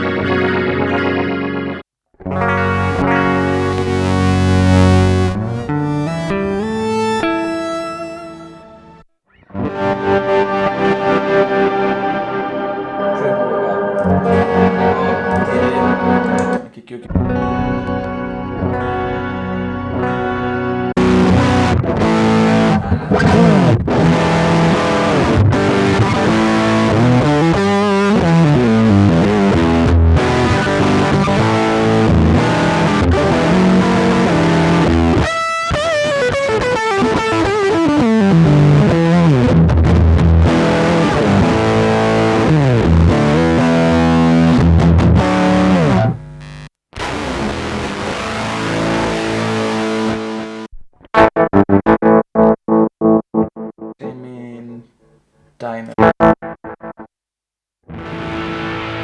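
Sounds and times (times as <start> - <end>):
distorted electric guitar: 2.3 - 35.2, 43.4 - 50.6, 57.9 - 59.0.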